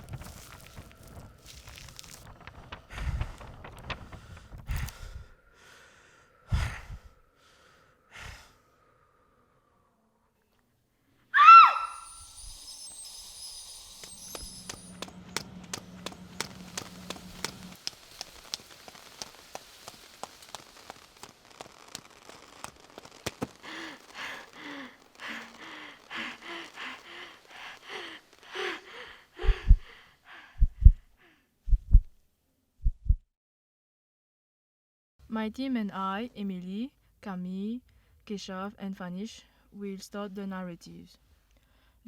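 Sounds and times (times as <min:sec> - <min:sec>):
faint hiss: 0:11.9 - 0:30.5
sharp ticks: 0:13.9 - 0:27.8
rhythmic panting breaths: 0:23.5 - 0:31.5
heartbeat thumps: 0:29.4 - 0:32.2, 0:32.8 - 0:33.3.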